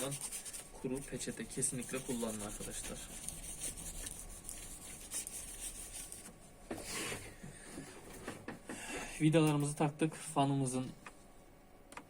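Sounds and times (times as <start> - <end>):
tissue rubbing laptop parts: 0.0 - 6.3.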